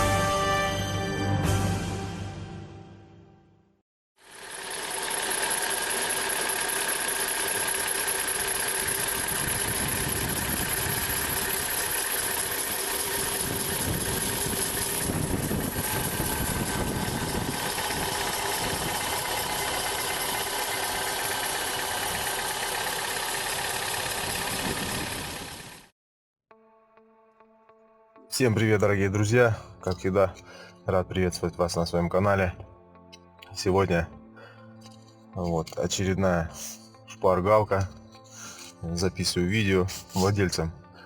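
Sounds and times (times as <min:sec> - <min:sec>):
car engine idling: 0:04.6 - 0:25.8.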